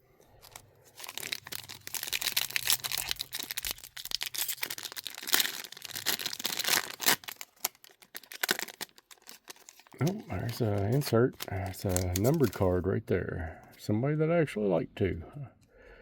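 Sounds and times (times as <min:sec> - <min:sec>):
foil wrapper crinkling and tearing: 0:00.3 - 0:12.8
cards being handled: 0:00.4 - 0:12.8.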